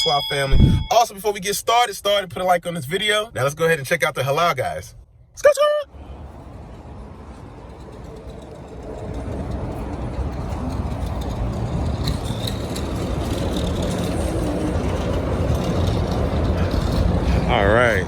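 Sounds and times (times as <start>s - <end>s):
road traffic rumble: 5.9s - 18.0s.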